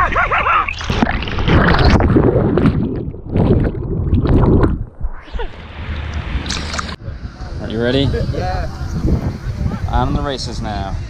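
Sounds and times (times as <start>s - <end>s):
water rushing: 0.7s - 7.0s
wind buffeting microphone: 2.0s - 11.0s.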